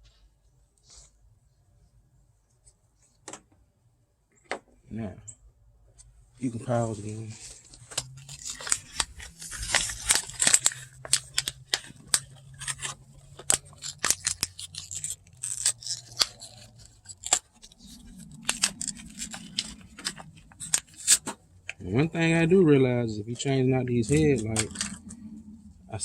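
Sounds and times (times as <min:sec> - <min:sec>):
faint low hum: 0:03.7 - 0:26.0
plastic parts clicking and rustling: 0:06.4 - 0:22.4, 0:23.3 - 0:26.0.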